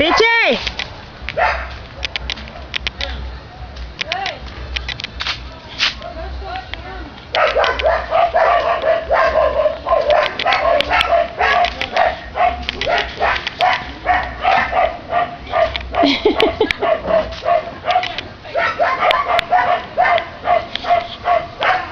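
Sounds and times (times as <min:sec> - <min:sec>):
dog barking rapidly: 0:00.0 - 0:00.5, 0:01.4 - 0:01.8, 0:07.4 - 0:21.9.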